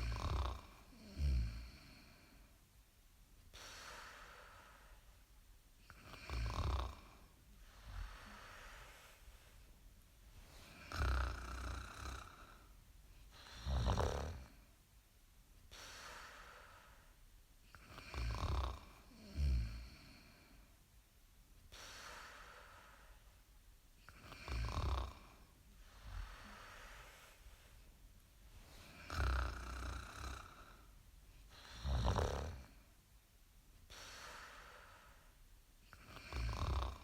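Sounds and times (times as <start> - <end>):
loud low snores: 0.0 - 2.3, 5.9 - 7.2, 10.7 - 12.7, 13.4 - 14.6, 17.8 - 20.5, 24.1 - 27.2, 28.8 - 30.9, 31.5 - 32.8, 35.9 - 37.0
soft breathing: 0.0 - 2.7, 3.5 - 14.8, 15.7 - 20.8, 21.6 - 33.0, 33.8 - 37.0.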